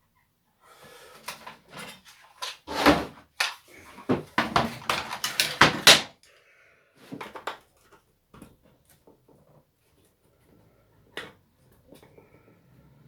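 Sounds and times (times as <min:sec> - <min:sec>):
plastic parts and tools handled: 0:01.0 - 0:06.1
clicks and knocks of hand work: 0:01.2 - 0:06.1.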